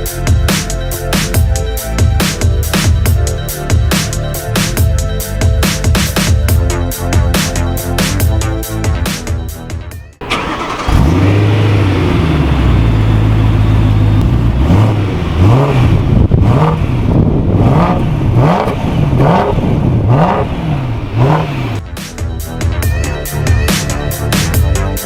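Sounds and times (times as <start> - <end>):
car engine starting and revving: 10.2 - 21.8.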